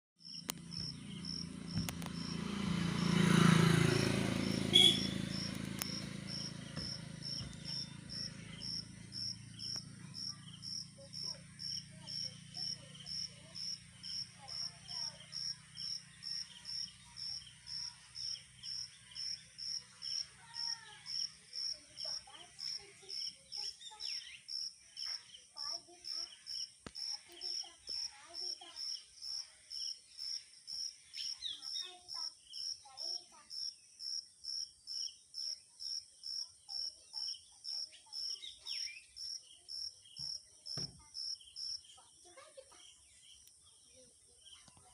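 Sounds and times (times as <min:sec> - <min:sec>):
insects buzzing: 0:00.2 - 0:44.8
insect chirping rhythmically: 0:00.2 - 0:44.9
short bird-like calls: 0:04.6 - 0:09.8.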